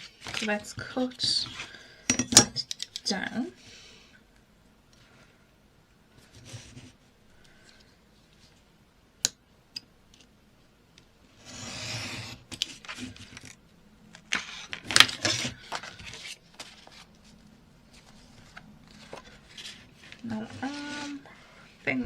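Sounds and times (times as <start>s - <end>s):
paper rasping slide: 11.4s - 13.4s.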